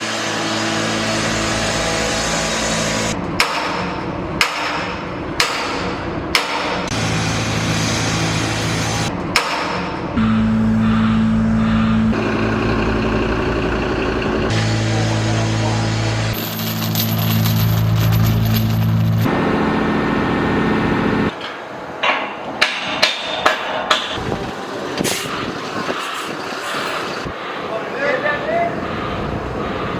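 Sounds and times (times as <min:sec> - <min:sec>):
sharp hammer-like knocks: 0:03.4 - 0:06.9, 0:09.3 - 0:09.9, 0:21.4 - 0:24.2.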